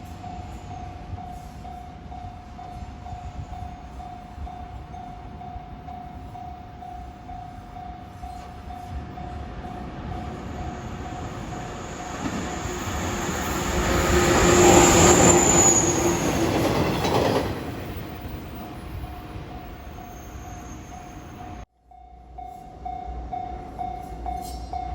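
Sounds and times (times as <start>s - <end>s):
train rumble: 0.0s - 24.9s
level crossing warning bell: 0.1s - 16.6s
high wheel squeal: 9.8s - 21.6s.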